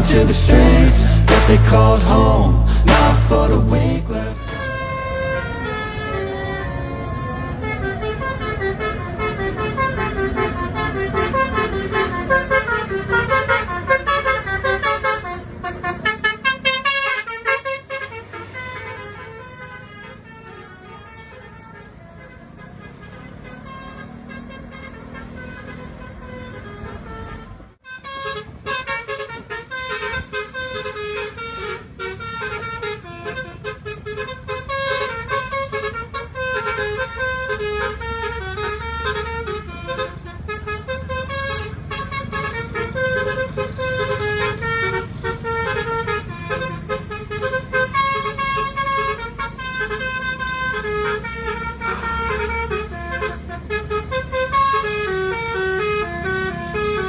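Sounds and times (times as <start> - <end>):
instrumental music with steady beat: 0.0 - 4.6.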